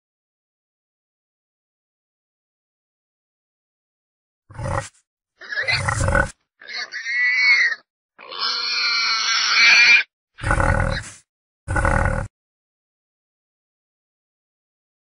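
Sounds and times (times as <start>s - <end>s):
wild boar grunting: 4.5s - 7.2s, 10.4s - 12.3s
wild boar squealing: 4.5s - 11.2s.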